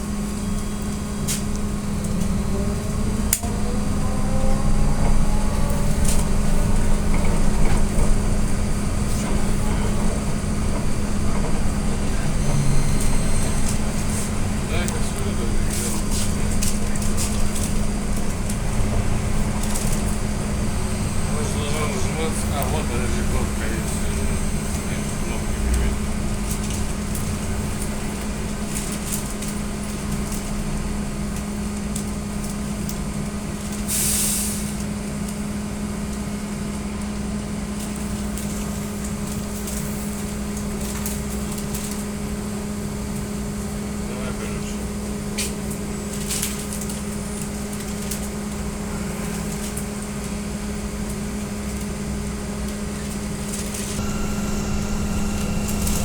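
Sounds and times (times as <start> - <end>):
trolleybus electrical hum: 0.0 - 56.0
high-pitched whine: 1.7 - 28.9, 53.8 - 56.0.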